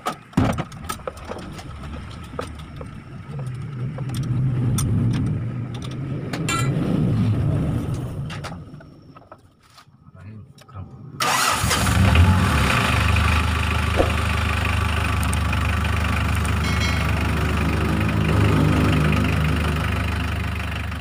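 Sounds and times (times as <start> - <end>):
pickup engine idling: 0.7 - 4.6, 12.4 - 21.0.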